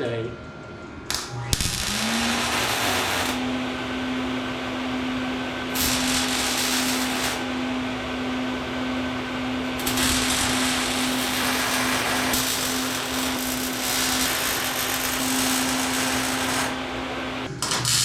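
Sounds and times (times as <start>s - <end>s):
welder humming: 0.9s - 18.0s
hissing arc crackle: 1.1s - 3.6s, 5.7s - 7.5s, 9.7s - 18.0s.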